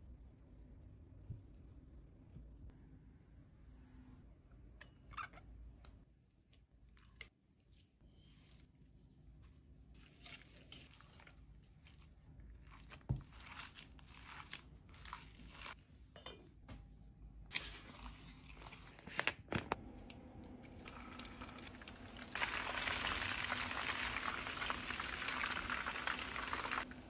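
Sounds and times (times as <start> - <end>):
food crunching and rustling: 9.4 - 15.9.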